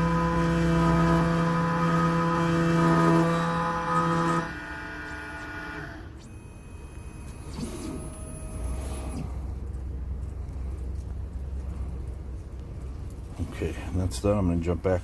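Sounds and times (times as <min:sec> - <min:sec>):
key-cutting machine motor whining: 0:00.0 - 0:09.5
low rumble: 0:08.0 - 0:14.9.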